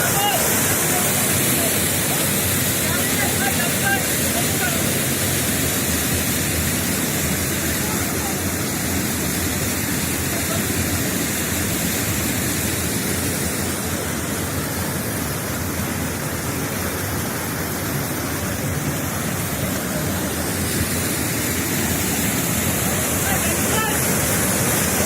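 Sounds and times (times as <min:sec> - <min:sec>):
waterfall rushing: 0:00.0 - 0:25.0.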